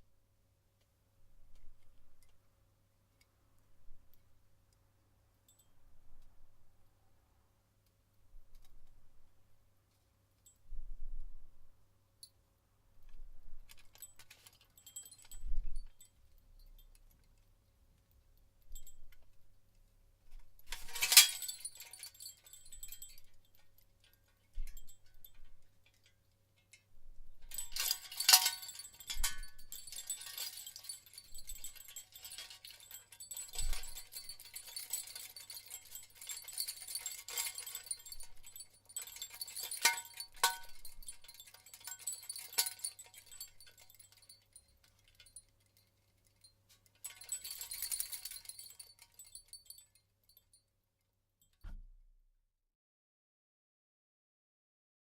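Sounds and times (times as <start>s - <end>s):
copper door chime bells jingling: 20.8s - 23.5s, 27.5s - 45.5s, 47.0s - 50.0s.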